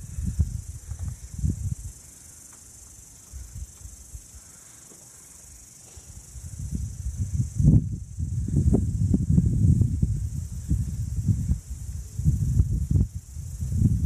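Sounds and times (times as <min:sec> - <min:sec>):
wind buffeting microphone: 0:00.0 - 0:02.1, 0:06.1 - 0:14.0
high-pitched insect chorus: 0:00.0 - 0:14.0.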